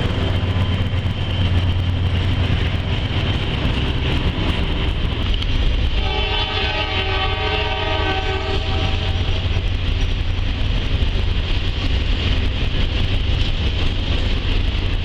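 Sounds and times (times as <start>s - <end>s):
train rumble and wheel noise: 0.0s - 15.0s
locomotive horn: 6.0s - 9.5s.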